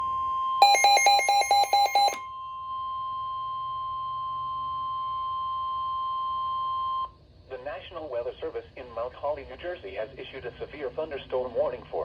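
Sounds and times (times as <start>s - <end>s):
loud steady high alarm tone: 0.6s - 6.5s.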